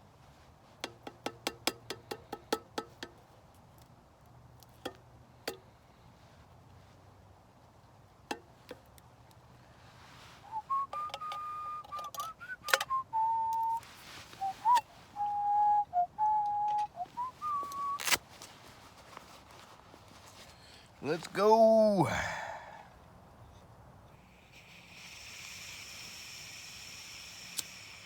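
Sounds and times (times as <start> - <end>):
person whistling slow tune: 10.4 - 18.1.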